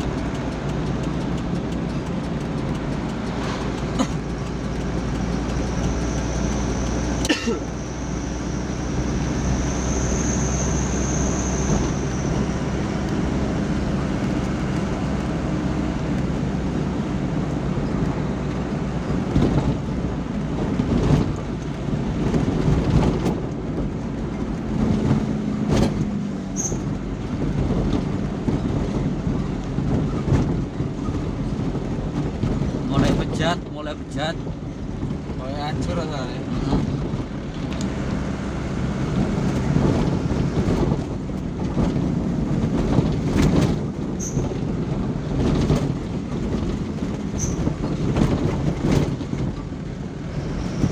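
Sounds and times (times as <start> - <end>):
road noise: 0.0 - 50.9
truck engine running: 0.0 - 50.9.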